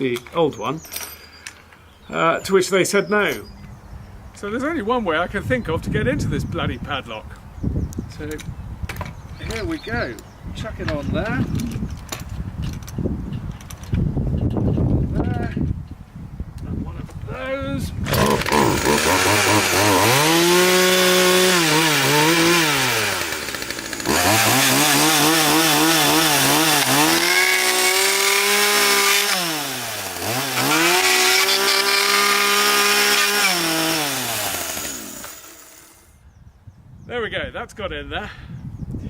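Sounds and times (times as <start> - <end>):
chainsaw revving: 18.0 - 36.1.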